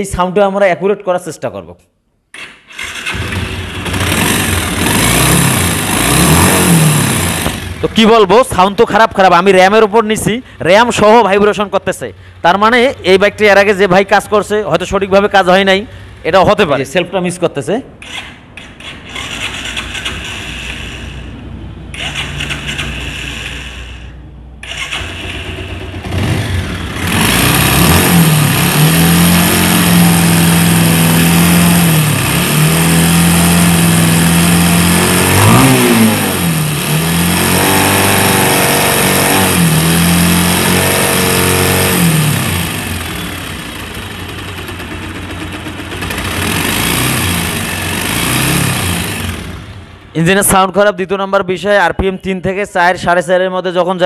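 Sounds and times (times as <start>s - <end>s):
motorcycle engine revving: 2.4s - 9.6s, 18.0s - 50.2s.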